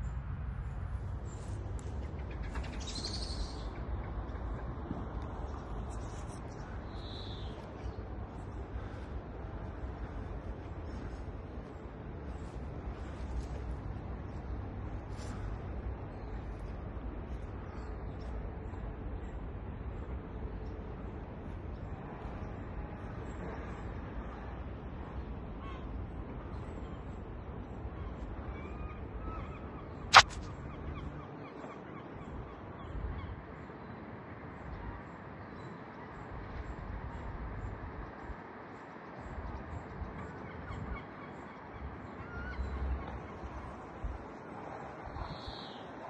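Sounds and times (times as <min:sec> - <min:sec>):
faint bird calls: 0:05.7 - 0:13.7
sharp loud click: 0:30.1 - 0:30.5.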